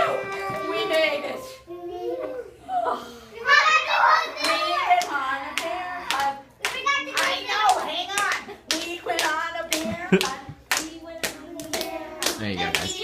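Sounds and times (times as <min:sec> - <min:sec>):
hands clapping and slapping: 0:04.4 - 0:13.0.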